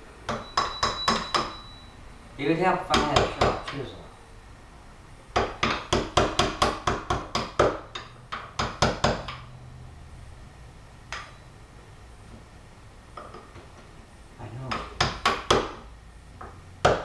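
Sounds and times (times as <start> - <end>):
hammer knocking on chisel: 0.3 - 1.6, 2.9 - 3.8, 5.3 - 9.5, 14.7 - 15.8, 16.4 - 17.0.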